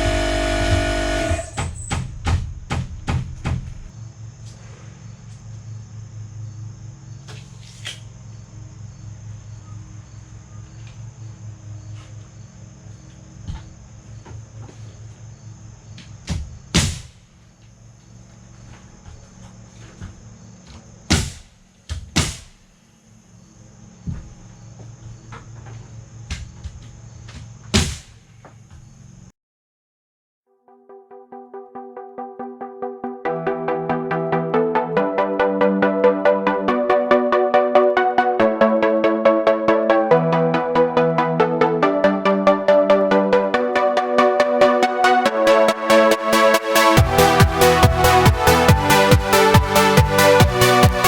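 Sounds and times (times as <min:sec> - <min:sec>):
low mechanical hum: 0:00.0 - 0:29.3
sharp knocks: 0:00.7 - 0:03.9, 0:21.1 - 0:22.6, 0:27.7 - 0:28.2.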